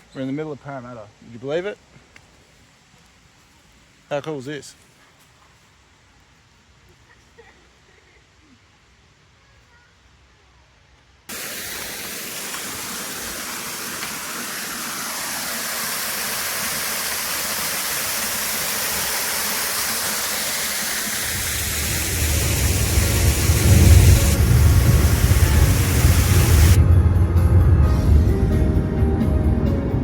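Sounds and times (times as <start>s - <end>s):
waterfall: 11.3s - 26.8s
music with heavy bass: 22.2s - 30.0s.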